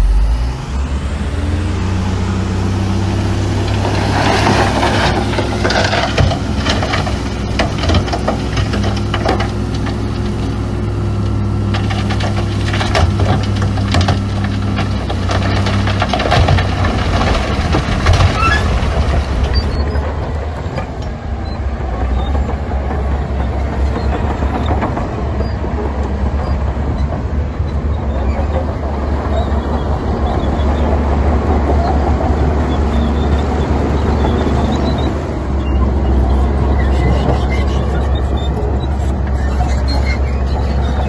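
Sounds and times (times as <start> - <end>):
diesel machinery engine rumble: 0.0 - 41.0
stone rattling and crunching: 11.7 - 20.3.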